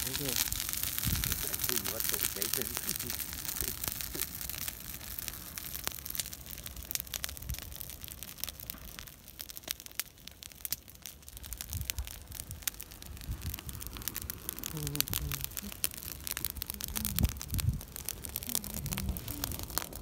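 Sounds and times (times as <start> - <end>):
crackling and rustling: 0.0 - 20.0
low rumble: 11.7 - 20.0.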